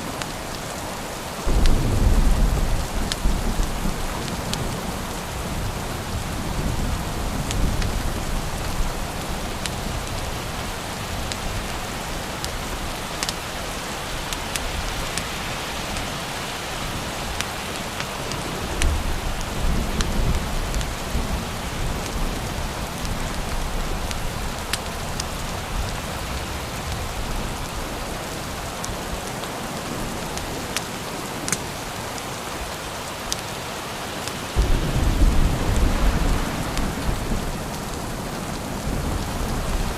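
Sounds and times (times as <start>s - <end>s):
heavy rain: 0.0s - 39.9s
distant thunder rolling: 1.5s - 8.9s, 34.6s - 39.9s.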